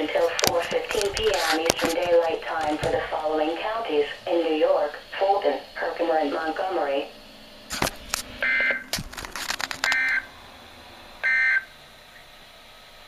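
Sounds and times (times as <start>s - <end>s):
static crackles: 0.0s - 10.3s.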